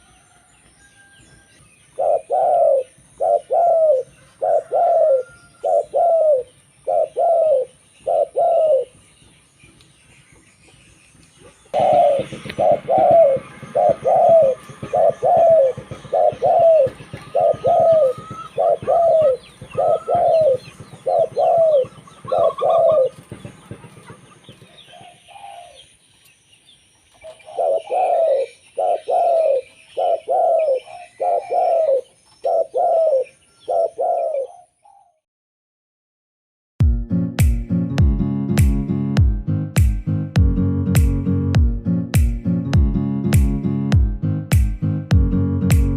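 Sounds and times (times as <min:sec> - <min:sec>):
dove cooing: 0:02.0 - 0:09.0, 0:11.5 - 0:25.9, 0:27.2 - 0:35.2.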